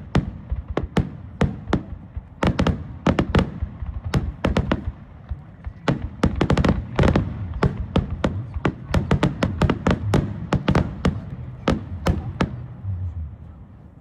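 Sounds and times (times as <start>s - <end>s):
fireworks bangs: 0.0s - 13.5s
low rumble: 7.2s - 14.0s.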